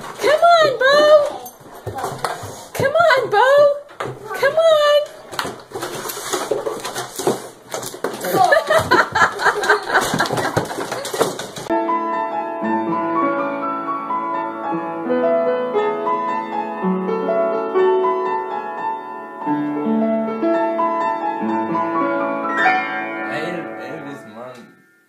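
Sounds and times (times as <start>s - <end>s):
piano playing chords: 11.7s - 25.0s.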